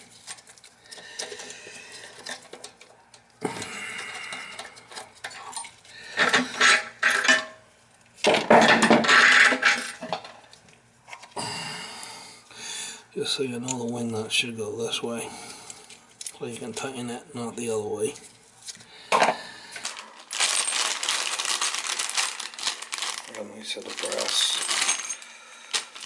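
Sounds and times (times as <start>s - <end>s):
small hardware clinking and rattling: 24.6s - 25.3s.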